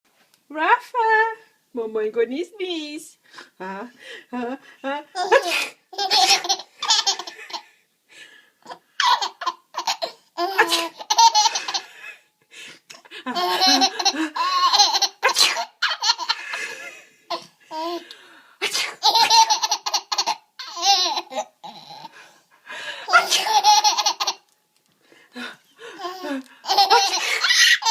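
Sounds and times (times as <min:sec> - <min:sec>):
baby belly laughing: 0:05.2 - 0:07.6, 0:08.6 - 0:12.0, 0:13.3 - 0:18.0, 0:19.0 - 0:22.1, 0:23.1 - 0:24.4, 0:26.0 - 0:27.9.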